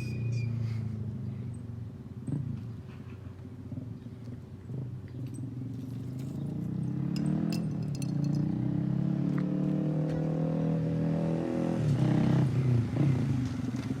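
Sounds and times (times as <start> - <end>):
motorcycle engine revving: 4.6 - 14.0.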